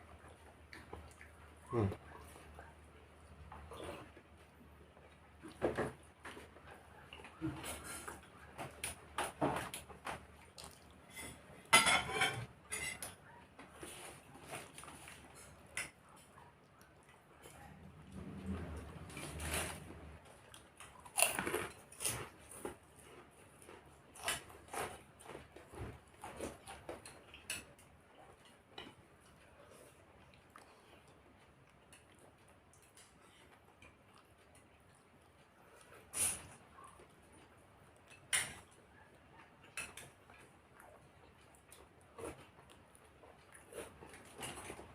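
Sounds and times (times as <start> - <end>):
mouth noises eating: 0.8 - 4.5
cutlery scraping a plate: 11.1 - 13.1.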